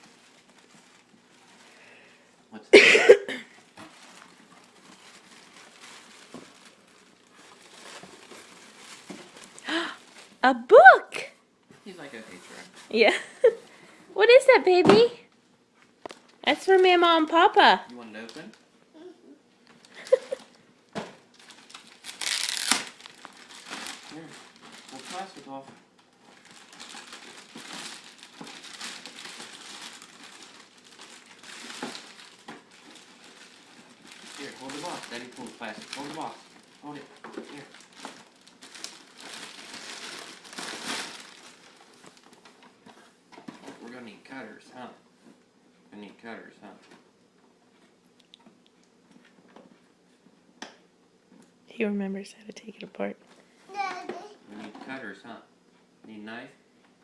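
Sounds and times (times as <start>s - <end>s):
paper rustling and crinkling: 0.0s - 1.9s, 3.6s - 10.4s, 21.3s - 43.9s.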